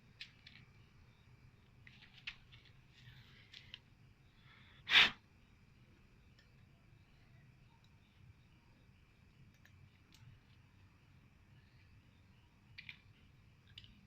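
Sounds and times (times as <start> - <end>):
faint clicks and scrapes: 1.8 - 3.9.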